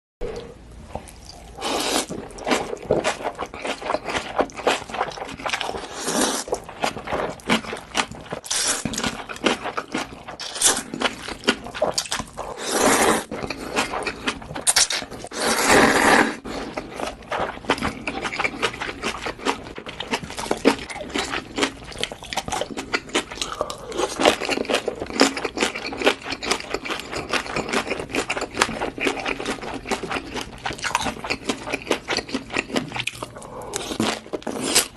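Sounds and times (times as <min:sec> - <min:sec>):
noodle slurping: 0:05.0 - 0:06.6, 0:11.8 - 0:14.0, 0:14.9 - 0:16.9.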